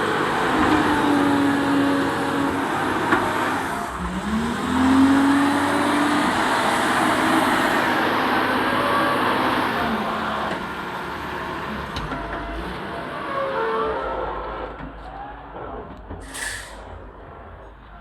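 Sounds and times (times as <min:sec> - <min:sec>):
construction loader running: 0:00.0 - 0:18.0
sharp hiss of air: 0:16.2 - 0:16.9.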